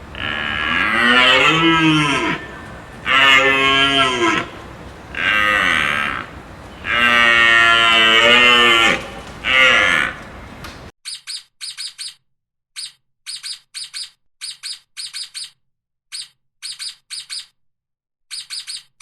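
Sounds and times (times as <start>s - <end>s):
cow mooing: 0.0s - 10.9s.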